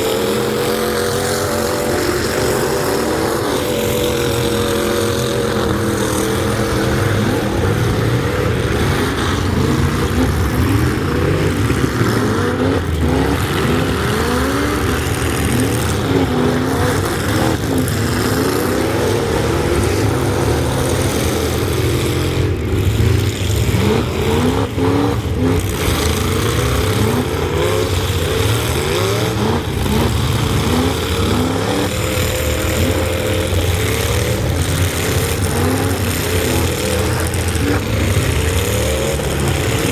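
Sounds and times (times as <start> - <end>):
truck engines revving: 0.0 - 39.9.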